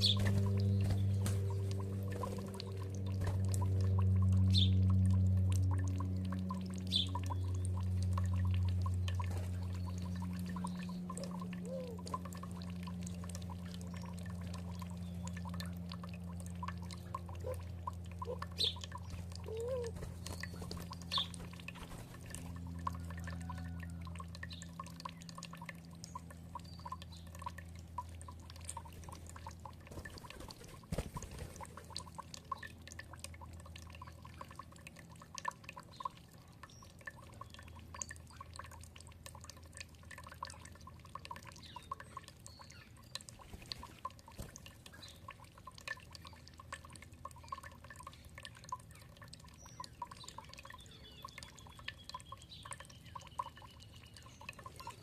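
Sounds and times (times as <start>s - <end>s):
low hum: 0.0s - 55.0s
water dripping: 0.0s - 55.0s
faint bird chirps: 48.9s - 55.0s.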